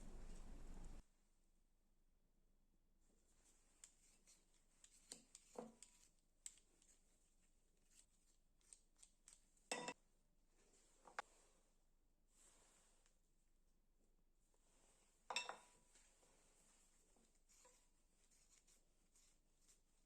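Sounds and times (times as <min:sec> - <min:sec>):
clicks and taps of objects handled: 0:04.8 - 0:07.0.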